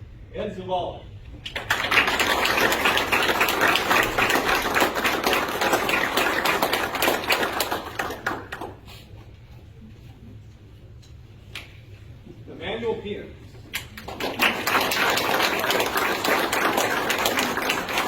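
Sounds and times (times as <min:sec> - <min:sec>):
audience applauding: 0:01.5 - 0:08.8, 0:13.9 - 0:18.0.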